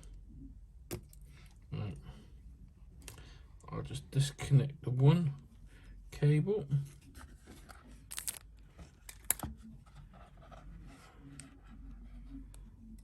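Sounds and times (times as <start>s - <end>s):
faint scratching: 9.6s - 13.0s.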